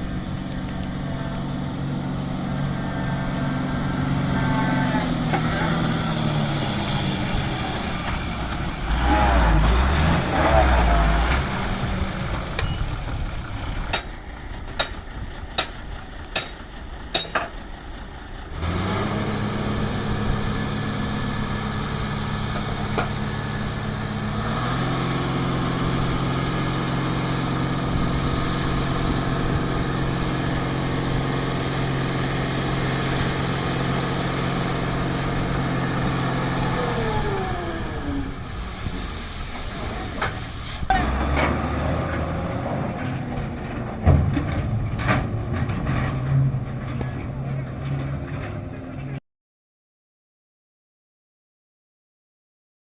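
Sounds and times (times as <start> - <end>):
heavy vehicle engine running: 0.0 - 49.2.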